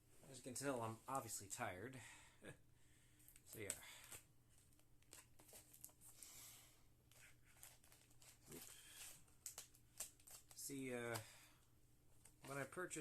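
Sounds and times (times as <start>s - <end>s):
package wrapping rustling: 7.1s - 10.6s.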